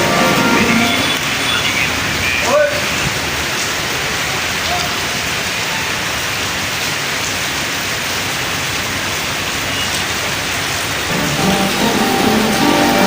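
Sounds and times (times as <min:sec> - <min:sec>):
music: 0:00.0 - 0:01.2, 0:11.1 - 0:13.0
heavy rain falling: 0:00.0 - 0:13.0.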